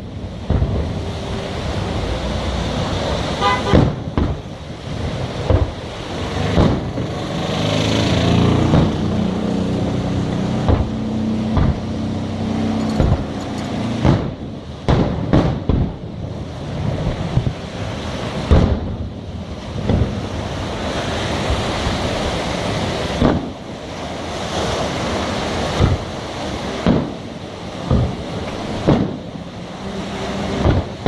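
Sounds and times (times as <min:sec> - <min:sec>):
fireworks bursting: 0:00.0 - 0:07.2, 0:08.6 - 0:09.1, 0:10.6 - 0:20.7, 0:22.9 - 0:23.8, 0:25.5 - 0:31.0
low steady drone: 0:00.0 - 0:07.4, 0:08.0 - 0:31.0.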